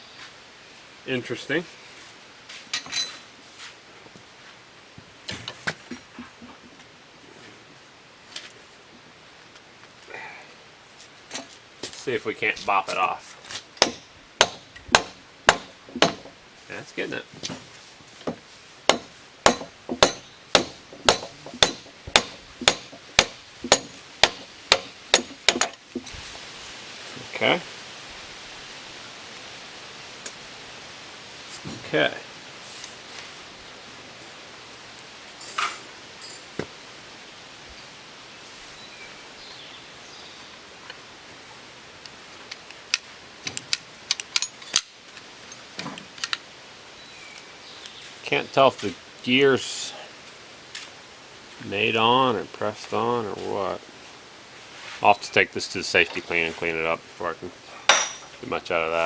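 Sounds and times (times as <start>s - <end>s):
hammer striking metal: 13.8s - 16.4s, 18.9s - 25.8s, 57.9s - 58.3s
metal parts clicking and clinking: 42.9s - 46.4s.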